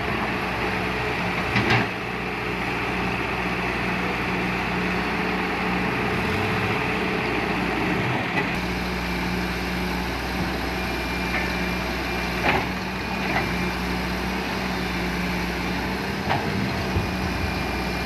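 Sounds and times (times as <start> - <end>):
heavy diesel engine running: 0.0 - 18.0.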